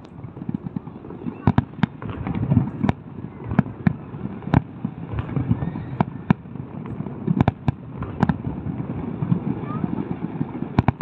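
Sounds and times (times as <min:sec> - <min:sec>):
fireworks bangs: 0:00.0 - 0:11.0.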